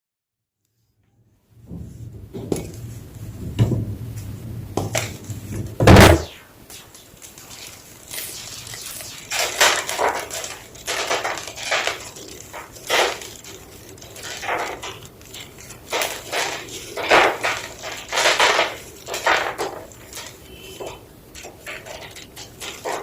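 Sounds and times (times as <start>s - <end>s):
chalk crumbling: 6.7s - 23.0s.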